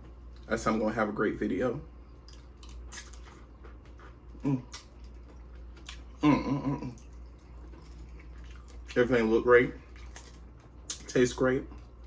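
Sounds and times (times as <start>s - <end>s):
chewing: 2.1s - 12.0s
crab shells cracking: 9.9s - 11.2s.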